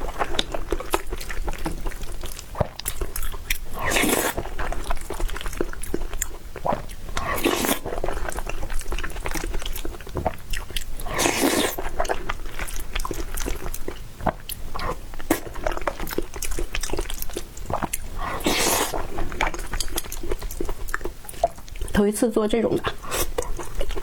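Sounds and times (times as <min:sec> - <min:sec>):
chewing soft food: 0:00.0 - 0:24.0.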